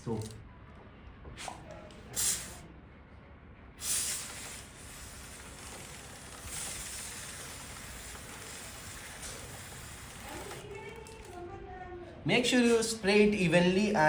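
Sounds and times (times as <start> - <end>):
aerosol spray hissing: 3.8 - 10.6.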